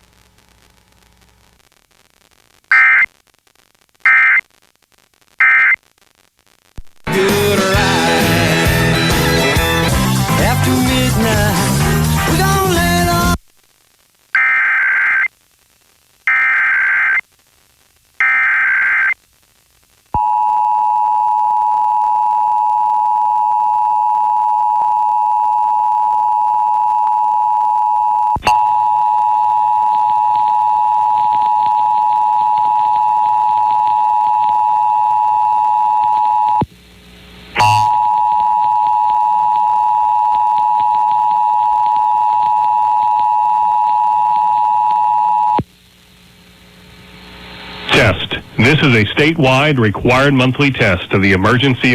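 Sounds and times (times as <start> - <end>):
two-tone attention signal: 37.6 - 39.0.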